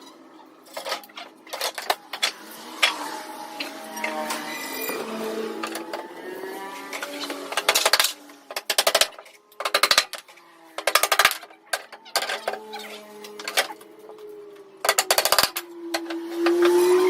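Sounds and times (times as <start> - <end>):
rotary hammer hammering: 3.6 - 17.0.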